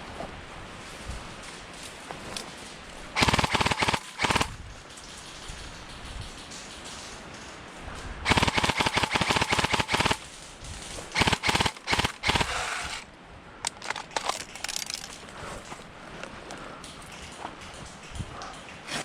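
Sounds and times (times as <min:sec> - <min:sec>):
airsoft gun firing: 0:03.2 - 0:04.6, 0:08.3 - 0:10.3, 0:11.1 - 0:13.1.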